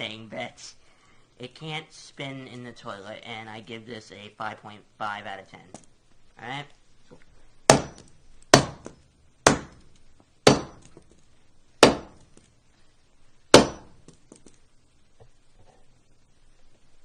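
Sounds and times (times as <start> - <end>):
hard impacts with ringing clink: 7.7 - 9.9.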